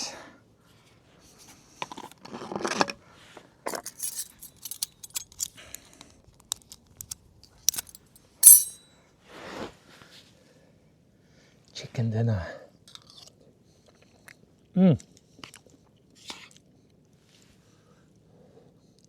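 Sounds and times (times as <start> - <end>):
cutlery scraping cookware: 3.7 - 4.9, 7.7 - 8.8
loud metallic clink: 7.7 - 8.8.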